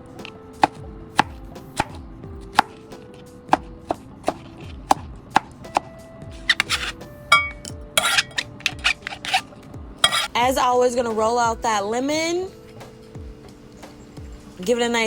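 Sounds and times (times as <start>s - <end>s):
knife chopping on cutting board: 0.6s - 2.9s, 3.5s - 9.4s, 10.0s - 10.3s.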